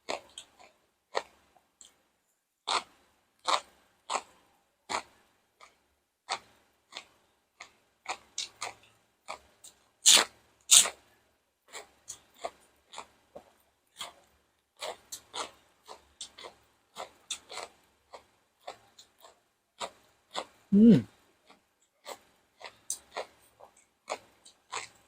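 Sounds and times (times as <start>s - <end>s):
person chewing crunchy food: 0.0s - 2.0s, 2.6s - 11.0s, 11.7s - 25.0s.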